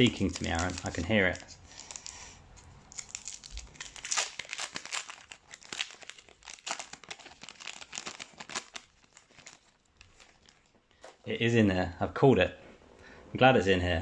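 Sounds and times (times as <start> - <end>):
wrapper tearing and crinkling: 0.0 - 2.3, 2.9 - 10.7.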